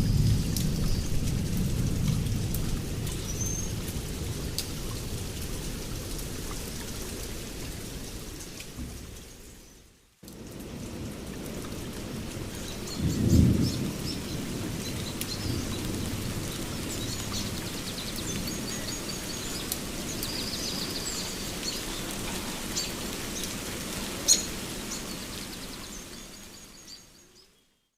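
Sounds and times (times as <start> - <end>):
low thunder rumble: 0.0 - 5.4, 10.4 - 18.6
steady rain: 0.0 - 27.6
birds chirping: 12.3 - 27.4.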